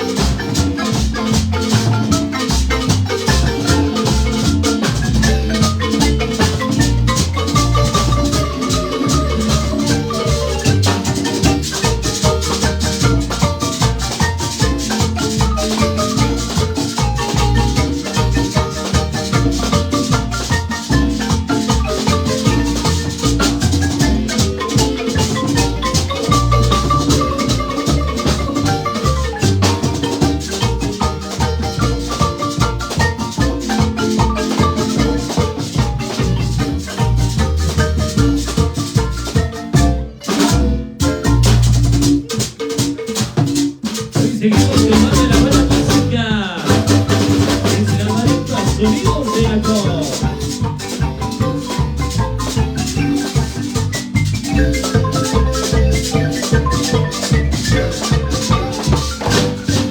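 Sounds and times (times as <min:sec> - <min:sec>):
deep bass notes: 0:00.0 - 0:42.1, 0:44.4 - 0:59.9
marimba notes: 0:00.0 - 0:59.9
percussion beat: 0:00.0 - 0:59.9.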